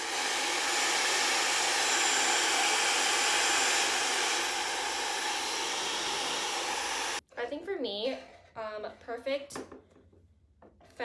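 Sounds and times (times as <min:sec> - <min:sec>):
hair dryer running: 0:00.0 - 0:07.2.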